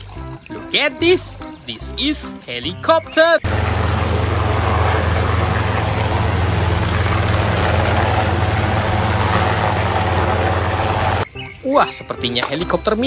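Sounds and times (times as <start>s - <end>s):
helicopter rotor and engine: 3.4s - 11.3s.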